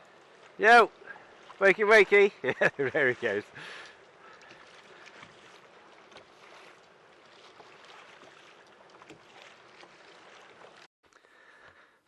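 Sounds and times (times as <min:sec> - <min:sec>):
seawater lapping against kayak hull: 0:00.0 - 0:10.9
light drips and ticks: 0:00.0 - 0:11.9.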